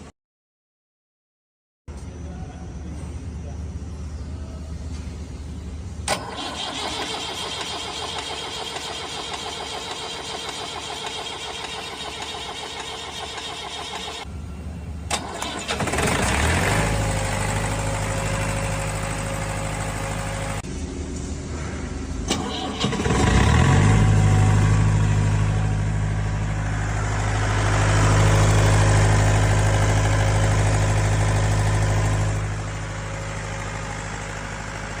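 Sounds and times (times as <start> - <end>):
diesel engine running: 2.1 - 35.0
diesel engine cranking: 6.0 - 14.3, 15.0 - 20.6, 22.2 - 35.0.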